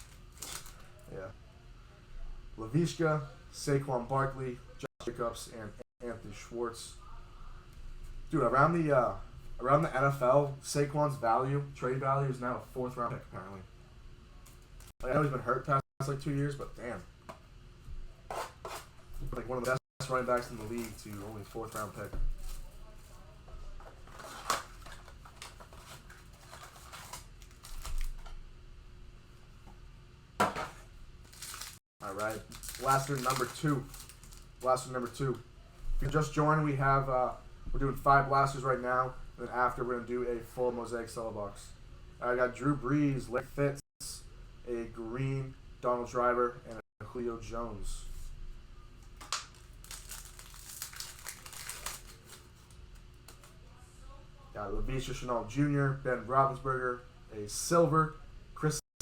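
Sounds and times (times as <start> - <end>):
packaging rustling: 0.0 - 0.9, 19.7 - 23.2, 23.8 - 28.3, 31.2 - 35.1, 49.2 - 53.5
foil wrapper crinkling: 0.0 - 1.0, 19.7 - 23.3, 23.9 - 28.3, 31.2 - 35.1, 49.1 - 53.6.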